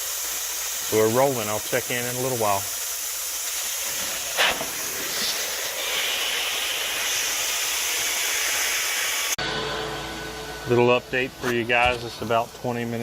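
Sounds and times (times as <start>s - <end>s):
carpet extraction wand hissing: 0.0s - 9.4s.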